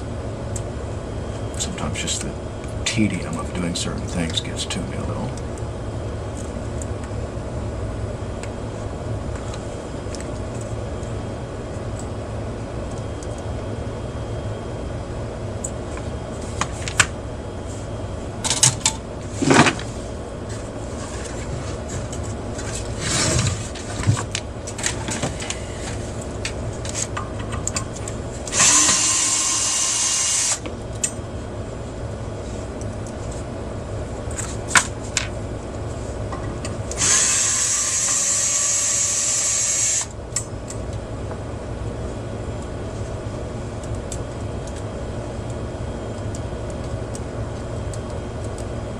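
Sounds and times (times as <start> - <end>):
steady low hum: 0.0 - 48.9
electric screwdriver running: 28.5 - 30.6, 37.0 - 40.1.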